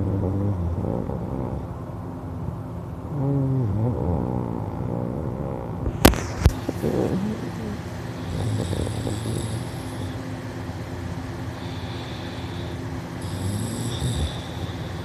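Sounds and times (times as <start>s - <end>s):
person snoring: 0.0s - 1.7s, 3.1s - 5.8s, 6.5s - 10.3s, 11.5s - 15.0s.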